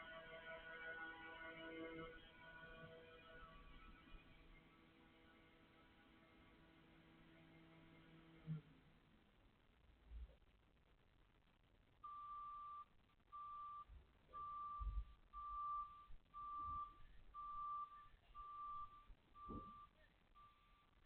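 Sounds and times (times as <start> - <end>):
reversing alarm beeping: 13.4 - 20.9
low thuds: 18.4 - 19.9.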